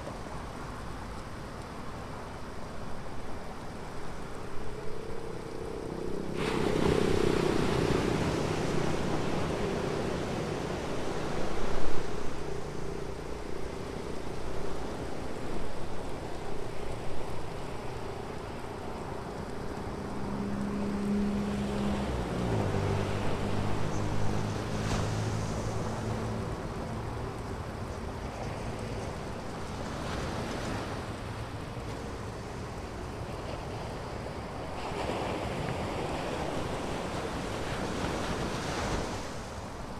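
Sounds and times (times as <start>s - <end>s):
ocean surf on beach: 0.0s - 39.9s
traffic passing: 18.0s - 28.7s.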